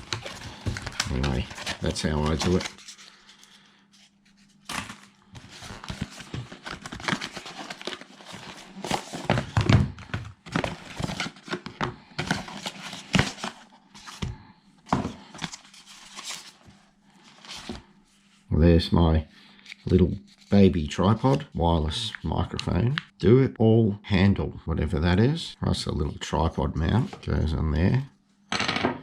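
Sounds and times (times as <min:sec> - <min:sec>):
cardboard packaging rustling and tearing: 0:00.0 - 0:14.3, 0:15.0 - 0:17.9.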